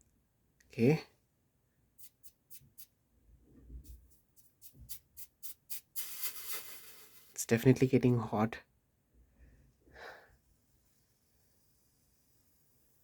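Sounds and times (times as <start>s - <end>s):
water hissing on hot soldering iron: 3.8s - 7.4s.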